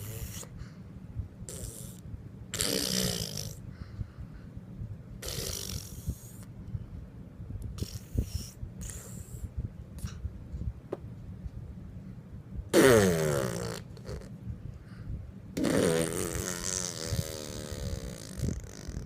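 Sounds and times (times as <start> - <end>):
silly buzzing vocal noises: 0.0 - 0.6, 1.4 - 3.7, 5.2 - 6.5, 7.8 - 10.2, 12.7 - 14.4, 15.6 - 19.0.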